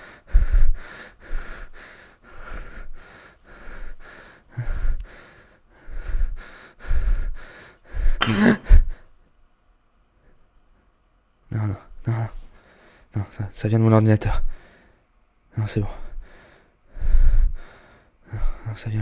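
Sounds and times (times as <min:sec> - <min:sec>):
person gasping: 0:00.0 - 0:09.1
person breathing hard and fast: 0:00.0 - 0:09.2, 0:12.1 - 0:13.3, 0:14.4 - 0:15.1, 0:15.9 - 0:18.8.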